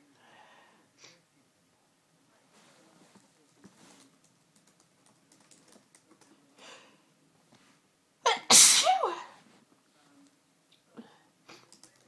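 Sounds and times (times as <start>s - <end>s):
faint breath: 0.2s - 1.2s.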